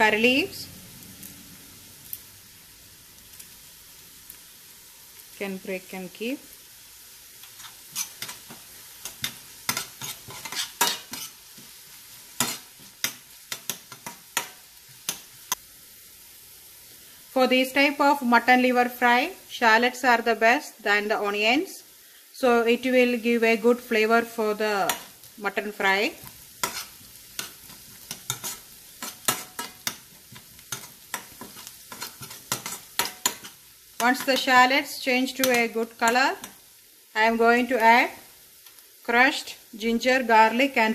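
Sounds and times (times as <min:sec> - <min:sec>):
food sizzling in hot oil: 0:00.0 - 0:40.9
stirring and scraping in a pan: 0:07.2 - 0:15.6, 0:24.6 - 0:36.8.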